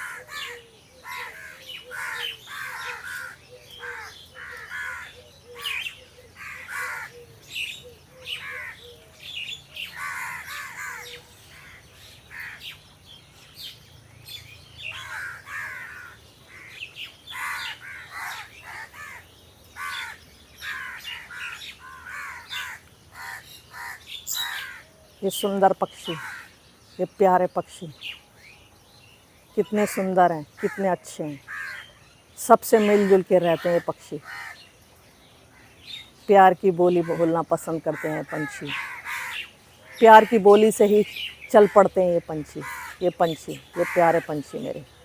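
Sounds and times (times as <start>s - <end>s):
crows cawing: 0.0s - 7.3s, 8.2s - 9.0s, 9.8s - 12.8s, 14.8s - 24.9s, 26.0s - 26.6s, 29.8s - 32.0s, 32.8s - 34.7s, 36.9s - 40.6s, 42.6s - 44.6s.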